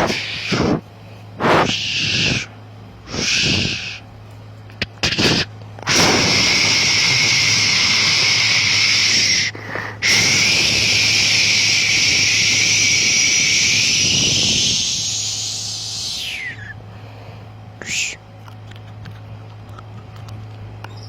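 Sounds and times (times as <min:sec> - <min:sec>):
blown air hissing: 0:00.0 - 0:04.0, 0:04.8 - 0:16.9, 0:17.8 - 0:18.2.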